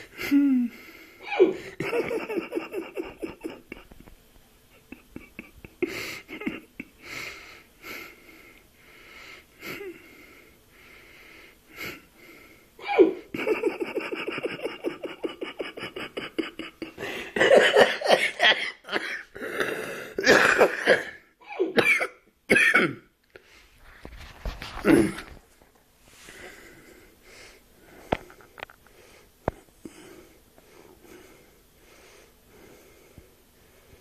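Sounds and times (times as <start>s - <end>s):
cough-like vocal bursts: 20.2s - 23.1s
man hiccuping: 20.2s - 23.1s, 24.8s - 25.3s.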